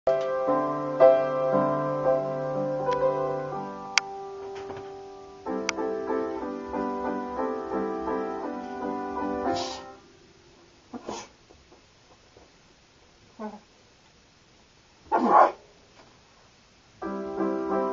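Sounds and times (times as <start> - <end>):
piano playing chords: 0.1 - 10.9, 17.0 - 17.9
hiss-like noise burst: 3.0 - 11.5.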